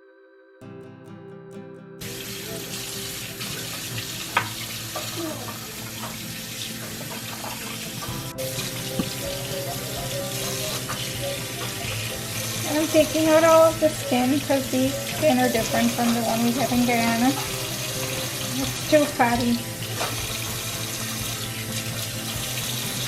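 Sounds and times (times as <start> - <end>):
soft music: 0.0 - 23.0
tap running into sink: 2.1 - 23.0.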